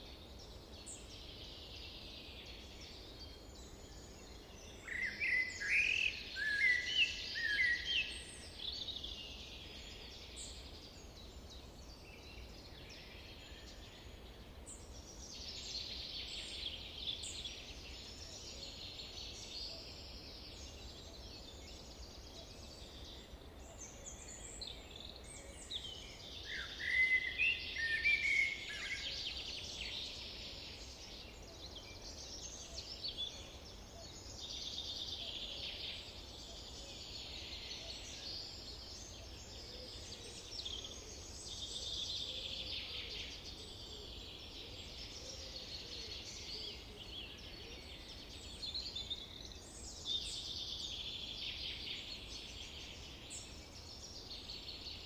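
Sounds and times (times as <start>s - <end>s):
birds chirping chorus: 0.0s - 55.0s
bird whistling song: 26.4s - 29.2s.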